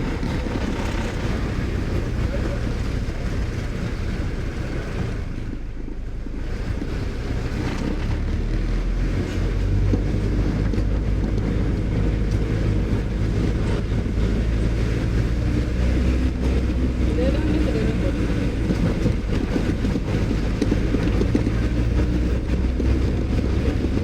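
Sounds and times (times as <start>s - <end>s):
vehicle engine and road rumble: 0.0s - 24.0s
wind buffeting microphone: 0.0s - 24.0s.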